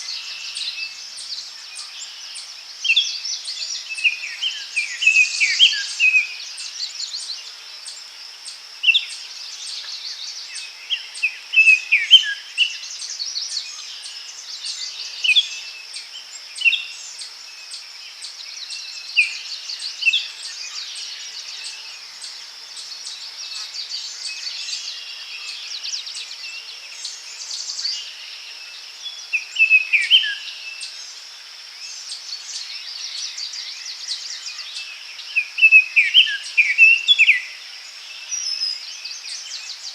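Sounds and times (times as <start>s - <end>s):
songbirds whistling: 9.8s - 13.9s, 29.3s - 31.0s, 35.3s - 37.6s.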